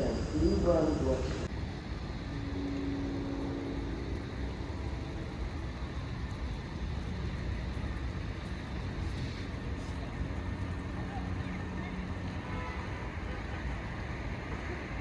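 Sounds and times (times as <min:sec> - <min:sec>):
faint steady hum: 0:00.0 - 0:15.0
low vehicle rumble: 0:00.0 - 0:15.0.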